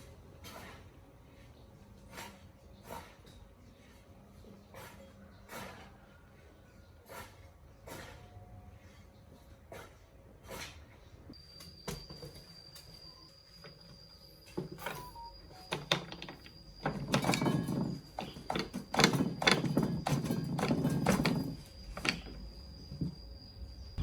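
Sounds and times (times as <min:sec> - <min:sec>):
tools clicking and knocking: 0:14.6 - 0:22.4.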